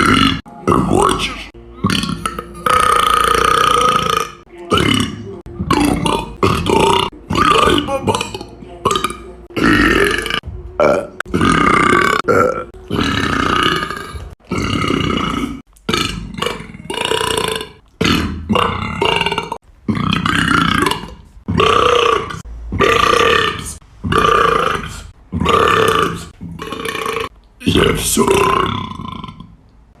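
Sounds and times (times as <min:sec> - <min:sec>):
person burping loudly: 0:00.0 - 0:00.5, 0:01.8 - 0:29.6.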